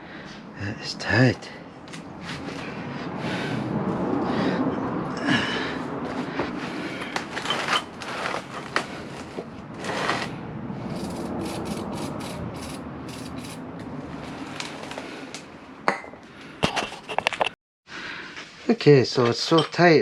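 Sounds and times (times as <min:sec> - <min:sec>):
metal tools clicking and scraping: 0:11.0 - 0:13.6.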